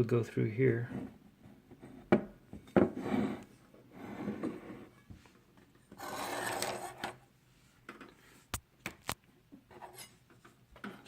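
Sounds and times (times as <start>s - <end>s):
hand tools scraping on surface: 6.0s - 7.0s.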